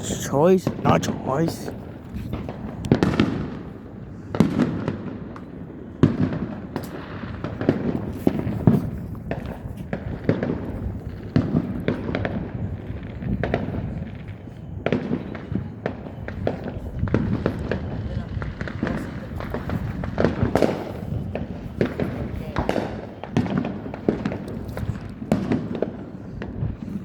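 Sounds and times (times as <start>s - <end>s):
fireworks bangs and pops: 0.0s - 27.0s.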